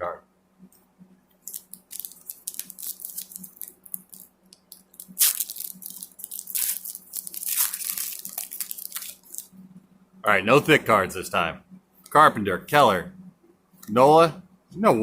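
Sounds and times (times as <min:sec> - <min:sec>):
foil wrapper crinkling and tearing: 0:01.4 - 0:09.5.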